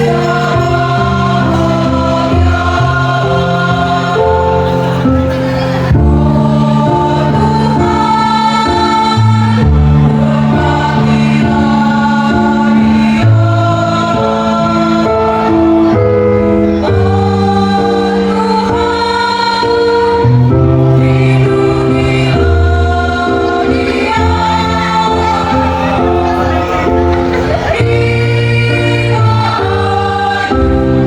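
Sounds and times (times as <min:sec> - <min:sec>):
mixed choir singing: 0:00.0 - 0:31.0.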